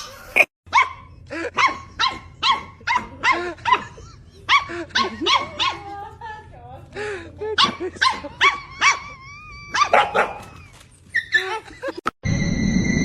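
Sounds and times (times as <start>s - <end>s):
dog barking: 0.7s - 3.9s, 4.5s - 5.9s, 9.8s - 10.5s.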